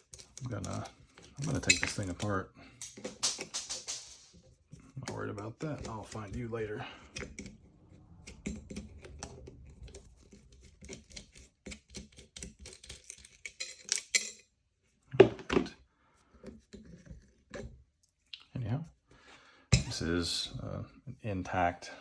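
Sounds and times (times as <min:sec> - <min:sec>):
metal lock parts clicking: 0:00.0 - 0:03.4, 0:10.7 - 0:14.5
parts knocking against tools: 0:00.0 - 0:04.4, 0:19.7 - 0:20.0.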